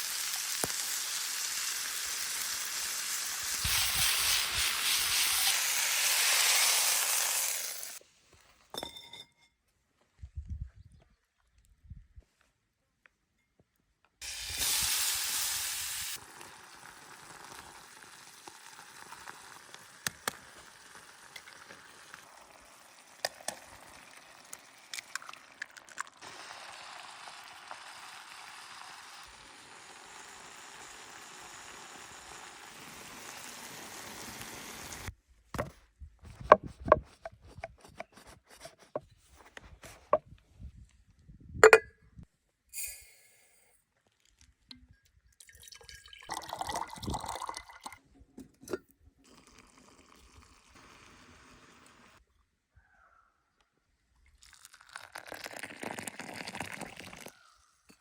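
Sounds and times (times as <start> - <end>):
liver sizzling in a pan: 0.0 - 8.0, 14.2 - 23.1, 26.2 - 35.1.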